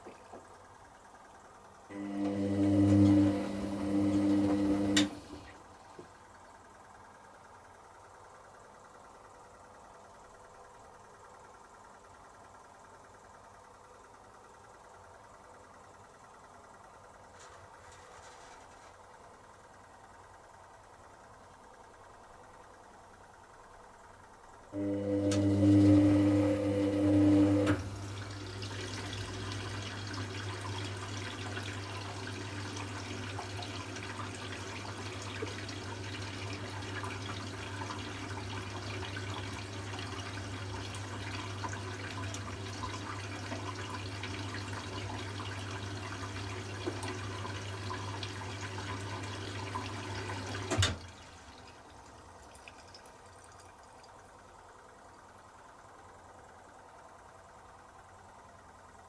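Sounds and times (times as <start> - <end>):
motor hum: 0.0 - 7.0, 19.5 - 59.0
low electrical hum: 0.0 - 59.0
water rushing into washing machine: 1.9 - 6.1, 24.8 - 55.4.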